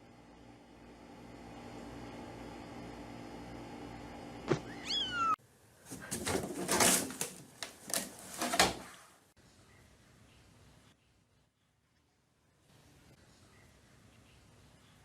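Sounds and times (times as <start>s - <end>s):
steady hum: 0.0s - 5.4s
cat meowing: 4.5s - 5.4s.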